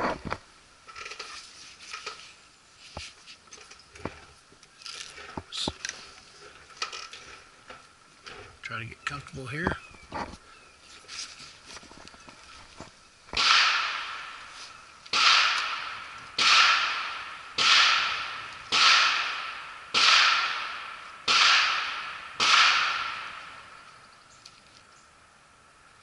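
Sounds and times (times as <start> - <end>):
rifle shots: 13.3 - 14.5, 15.1 - 23.8.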